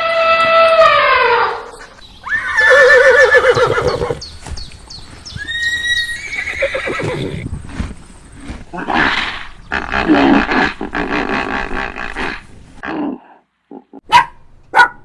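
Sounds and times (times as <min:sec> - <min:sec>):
horse neighing: 0:01.2 - 0:04.2, 0:05.4 - 0:07.4.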